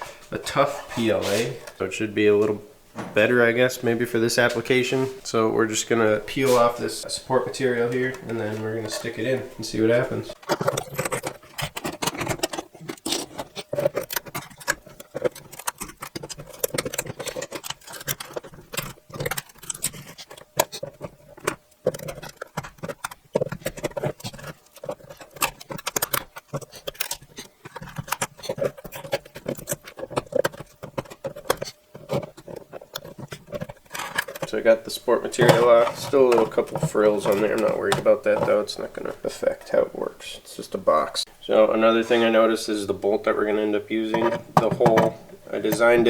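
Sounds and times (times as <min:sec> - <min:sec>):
plastic cracking and snapping: 0:10.3 - 0:34.6.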